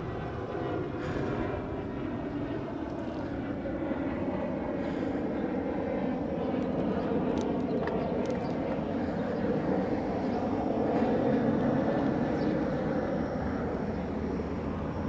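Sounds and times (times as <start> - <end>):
road and tyre noise: 6.2 - 15.0.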